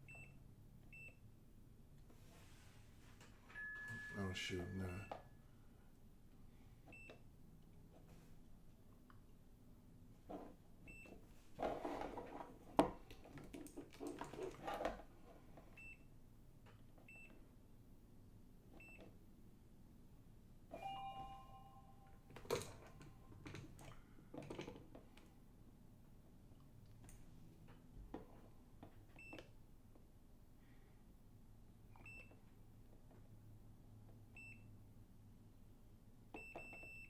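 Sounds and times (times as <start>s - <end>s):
multimeter beeps: 36.4s - 37.0s.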